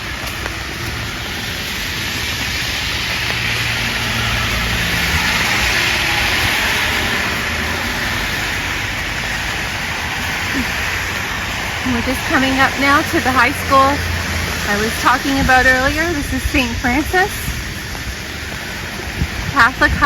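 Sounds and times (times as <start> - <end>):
car passing on wet street: 0.0 - 20.0
steady rain: 0.0 - 20.0.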